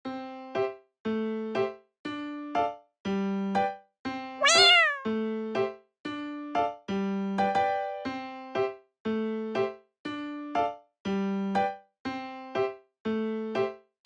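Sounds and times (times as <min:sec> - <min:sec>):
cat meowing: 0:04.4 - 0:05.1.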